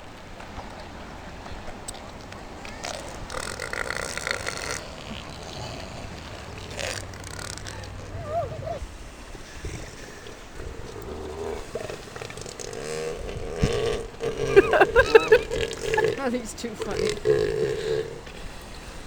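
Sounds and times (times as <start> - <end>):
elephant seals belching calls: 0.5 - 19.0.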